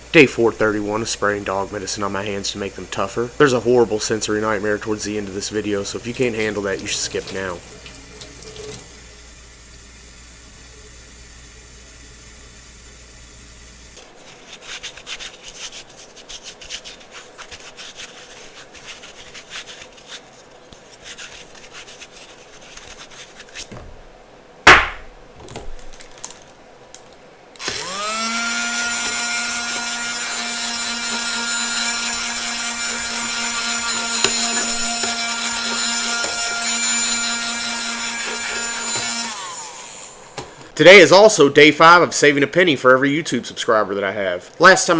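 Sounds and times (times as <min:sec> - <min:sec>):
scratchy rubbing: 0:14.0 - 0:23.8, 0:28.9 - 0:39.0
sharp knock: 0:24.7 - 0:25.1
power tool motor whining: 0:27.6 - 0:40.5.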